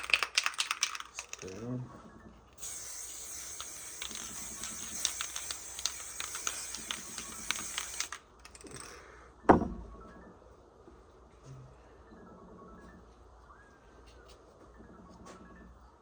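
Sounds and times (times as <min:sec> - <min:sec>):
small crackling clicks: 0:00.0 - 0:01.7
aerosol spray hissing: 0:02.6 - 0:08.2.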